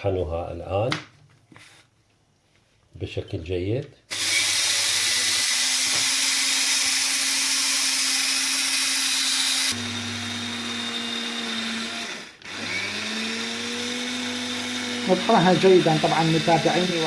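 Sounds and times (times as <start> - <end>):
electric coffee grinder motor: 4.1 - 17.0.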